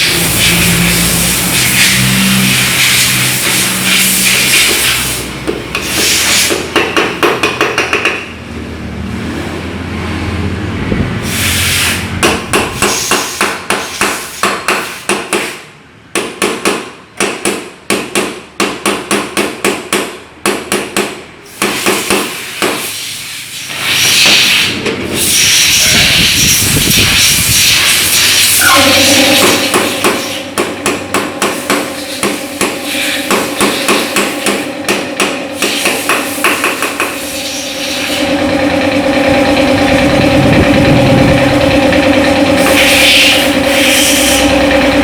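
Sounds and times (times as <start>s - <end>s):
loud rushing hiss: 0.0s - 6.6s, 11.1s - 12.2s, 21.6s - 38.2s
hammer striking metal: 0.0s - 8.4s, 28.1s - 38.2s.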